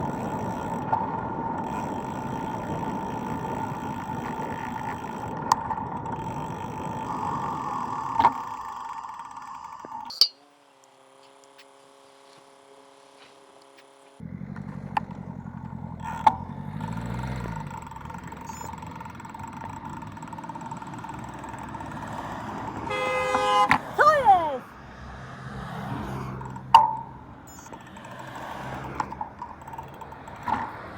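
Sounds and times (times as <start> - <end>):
road and wind noise: 0.0 - 30.9
car passing: 14.2 - 30.9
sharp clicks: 26.4 - 30.9.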